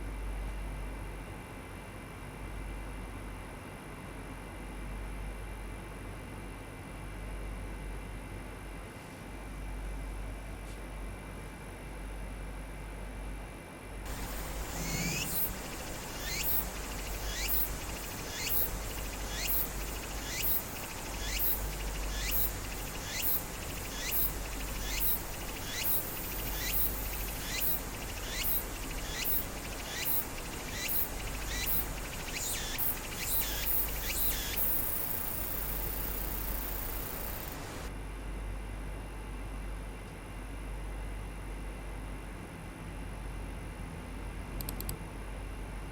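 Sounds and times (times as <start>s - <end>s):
faint low hum: 14.1s - 38.7s.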